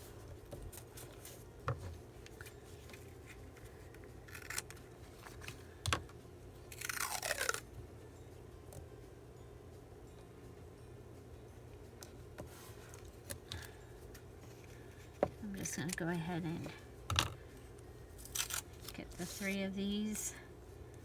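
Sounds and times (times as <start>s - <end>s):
paper rustling: 18.8s - 19.6s.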